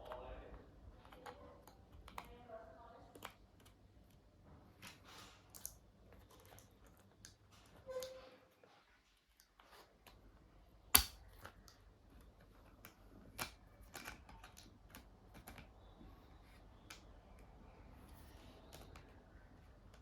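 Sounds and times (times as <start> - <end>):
laptop clicks and taps: 10.9 - 11.8.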